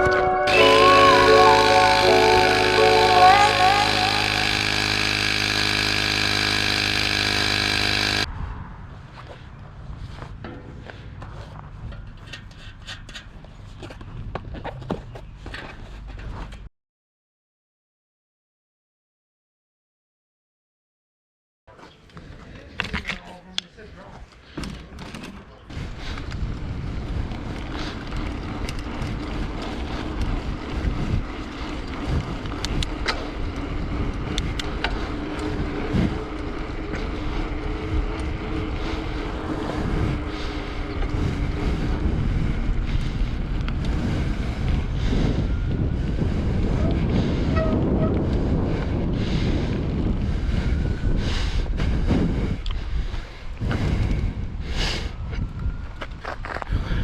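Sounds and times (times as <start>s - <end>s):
wind rumbling on microphone: 8.3s - 16.5s, 25.0s - 57.0s.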